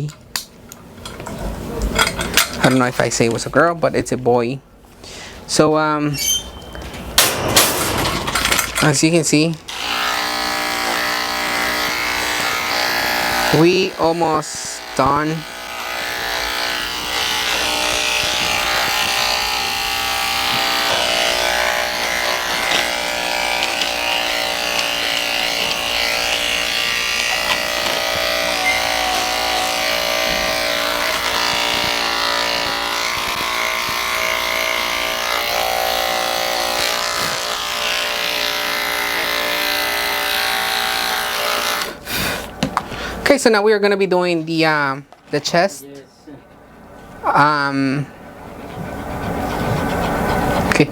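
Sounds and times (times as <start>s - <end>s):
electric clippers humming: 8.8s - 42.0s.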